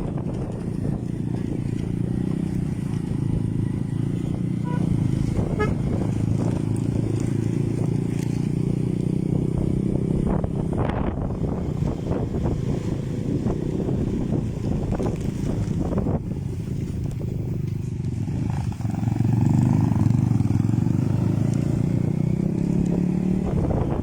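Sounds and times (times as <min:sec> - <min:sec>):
boat motor running: 0:04.6 - 0:07.5.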